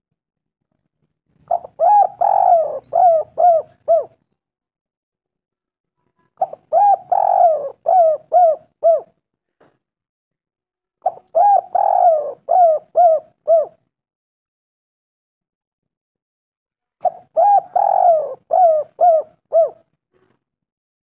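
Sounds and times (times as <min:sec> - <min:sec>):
dove cooing: 0:01.4 - 0:04.2, 0:06.4 - 0:09.2, 0:11.0 - 0:13.8, 0:17.0 - 0:19.9.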